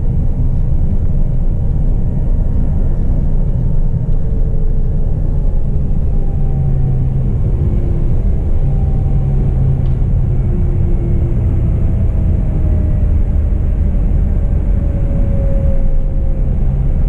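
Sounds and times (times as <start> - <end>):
boat engine rumble: 0.0 - 17.0.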